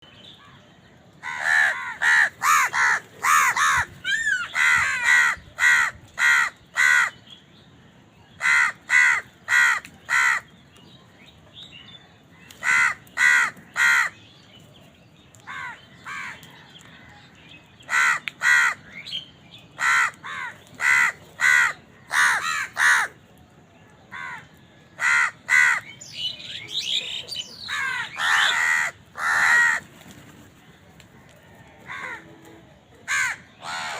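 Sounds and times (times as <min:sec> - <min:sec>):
crows cawing: 0:01.2 - 0:07.2, 0:08.4 - 0:10.5, 0:12.6 - 0:14.2, 0:15.5 - 0:17.1, 0:17.9 - 0:18.9, 0:19.8 - 0:23.2, 0:24.1 - 0:25.9, 0:27.6 - 0:29.9, 0:33.0 - 0:33.9.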